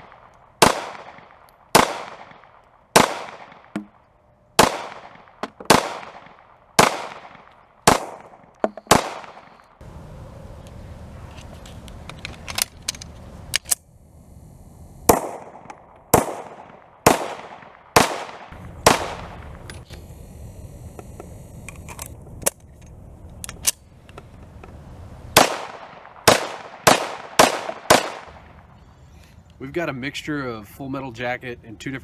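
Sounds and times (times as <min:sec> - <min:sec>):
pistol shots with echo: 0:00.0 - 0:03.9, 0:04.6 - 0:09.6, 0:15.1 - 0:19.6, 0:25.4 - 0:28.4.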